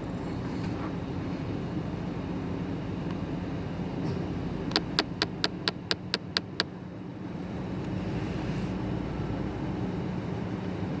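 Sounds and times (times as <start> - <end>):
rapid even clicking: 4.7 - 6.7.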